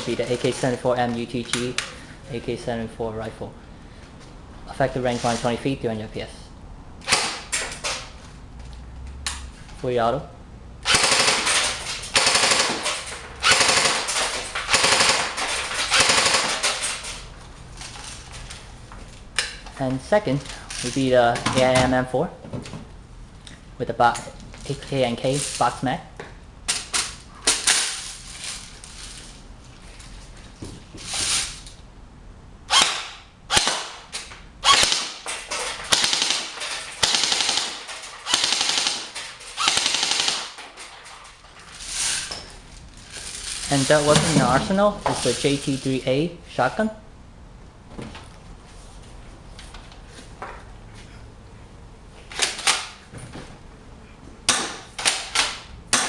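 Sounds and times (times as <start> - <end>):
airsoft rifle firing bursts: 10.9 - 16.8, 34.7 - 35.2, 35.8 - 40.6.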